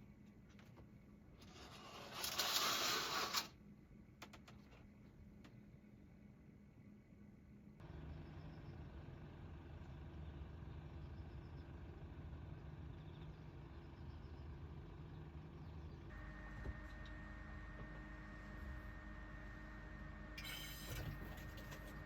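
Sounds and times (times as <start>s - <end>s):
faint steady hum: 0.0s - 22.0s
motor vehicle rumbling: 7.8s - 19.2s.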